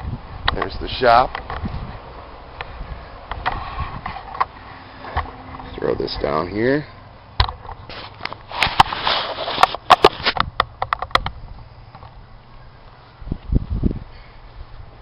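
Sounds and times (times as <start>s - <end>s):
sharp clicks and knocks: 7.4s - 12.2s
rustling: 7.7s - 10.4s.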